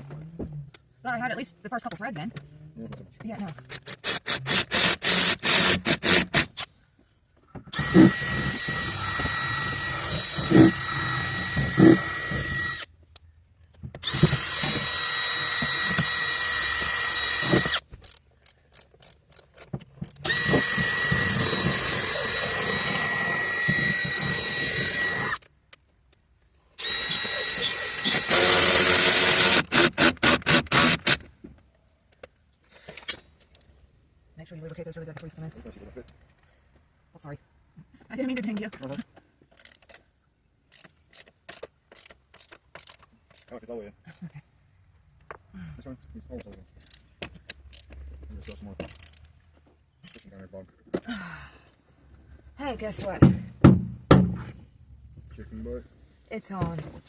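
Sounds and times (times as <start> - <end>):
cordless drill whining: 3.7 - 6.7, 7.7 - 12.9, 14.0 - 17.9, 20.1 - 25.5, 26.8 - 31.3.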